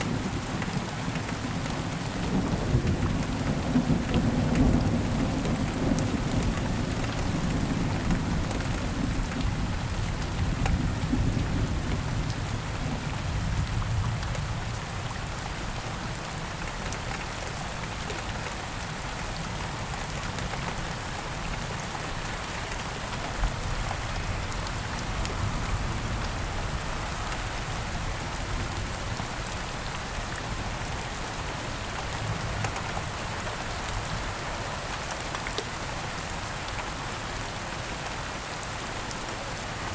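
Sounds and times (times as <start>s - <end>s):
steady rain falling: 0.0s - 39.9s
low rumble of thunder: 2.2s - 15.8s.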